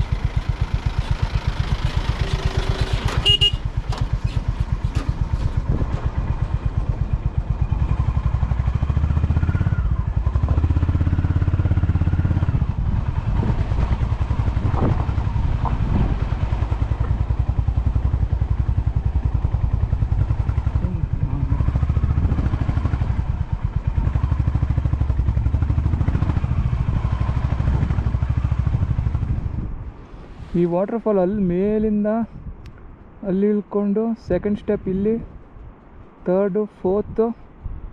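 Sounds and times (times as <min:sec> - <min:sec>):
motorcycle engine running: 0:00.0 - 0:29.9.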